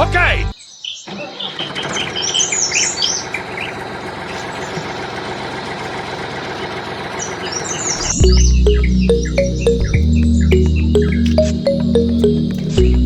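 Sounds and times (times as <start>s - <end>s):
background music: 0.0s - 0.5s, 8.2s - 13.0s
birds chirping: 0.0s - 13.0s.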